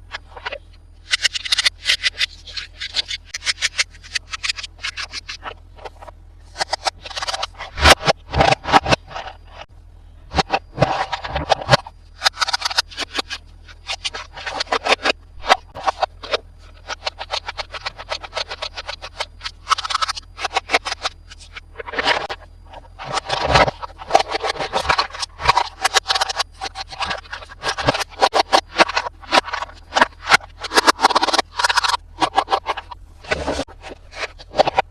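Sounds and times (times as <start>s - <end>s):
plastic toy parts clicking: 1.0s - 9.0s.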